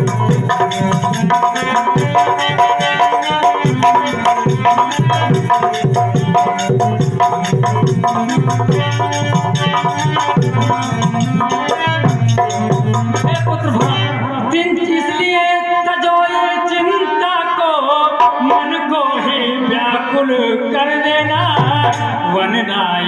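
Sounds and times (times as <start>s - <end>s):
hand drums: 0.0s - 14.1s, 21.5s - 22.3s.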